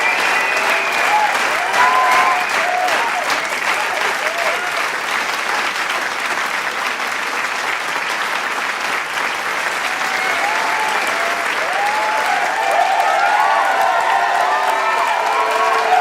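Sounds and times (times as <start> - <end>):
crowd shouting and cheering: 0.0 - 5.4, 9.6 - 16.0
crowd applauding: 0.0 - 16.0.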